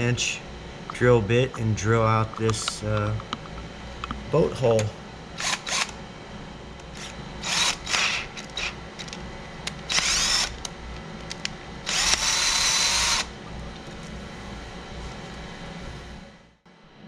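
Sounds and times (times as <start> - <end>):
power drill whining: 5.4 - 6.0, 6.9 - 9.2, 9.9 - 10.6, 11.9 - 13.3.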